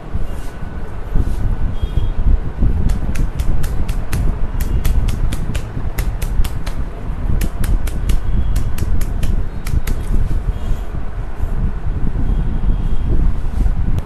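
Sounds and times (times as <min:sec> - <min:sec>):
steady low rumble: 0:00.0 - 0:14.0
sharp clicks or taps: 0:02.8 - 0:06.8, 0:07.4 - 0:10.2.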